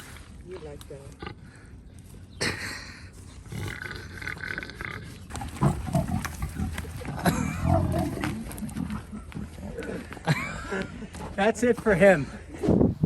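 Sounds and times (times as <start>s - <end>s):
farm animal grunting: 0.6s - 10.2s.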